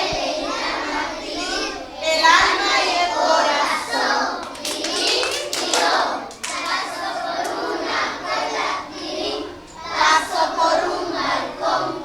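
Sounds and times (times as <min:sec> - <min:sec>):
children singing: 0:00.0 - 0:12.0
hand clapping: 0:04.4 - 0:07.7.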